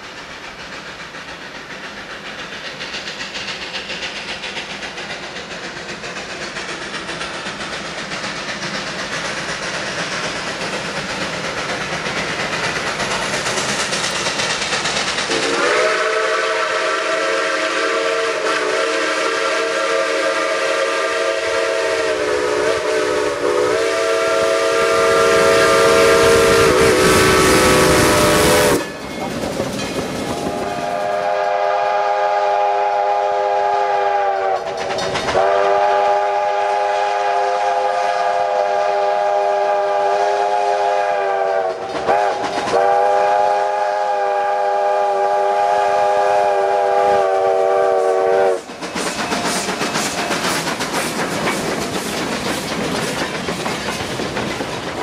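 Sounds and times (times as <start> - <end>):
train wheels clattering on rails: 0.0 - 55.0
train whistle chord: 15.3 - 29.0, 30.6 - 34.7, 35.4 - 48.7.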